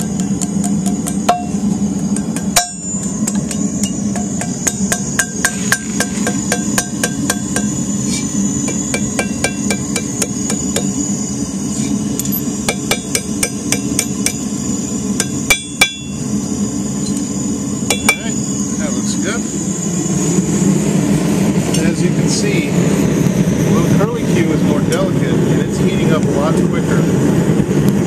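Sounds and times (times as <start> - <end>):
hammer ringing on anvil: 0.0 - 1.6, 2.2 - 7.8, 8.7 - 11.0, 12.6 - 14.5, 15.2 - 16.2, 17.9 - 18.4
steady low hum: 0.0 - 28.0.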